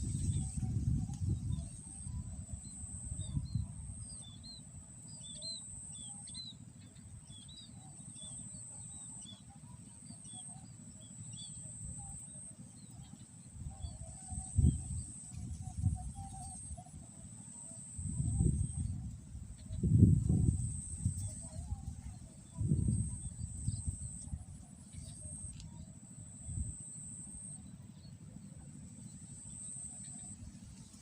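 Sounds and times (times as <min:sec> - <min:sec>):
high-pitched insect whine: 0:00.0 - 0:04.1, 0:13.9 - 0:27.6.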